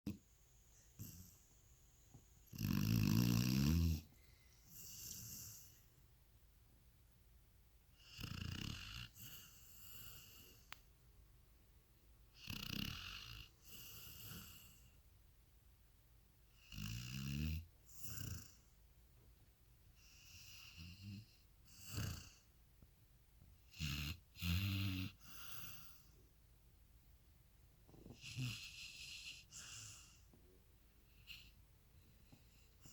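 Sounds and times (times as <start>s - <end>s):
person snoring with buzzing rattle: 2.5s - 4.1s, 8.1s - 10.4s, 12.4s - 14.6s, 16.6s - 18.6s, 20.4s - 22.4s.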